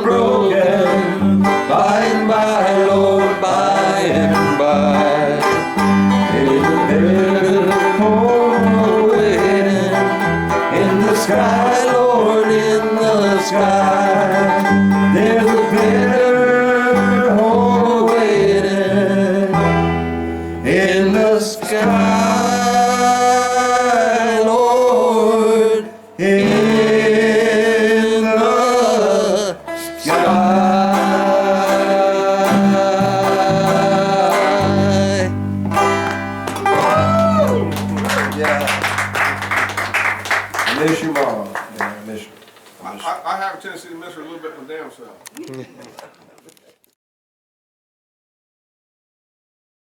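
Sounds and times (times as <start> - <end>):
person singing: 0.0 - 20.0, 20.6 - 36.0, 36.6 - 38.6
plucked banjo: 0.0 - 23.4, 26.4 - 40.9
country song: 0.0 - 42.3.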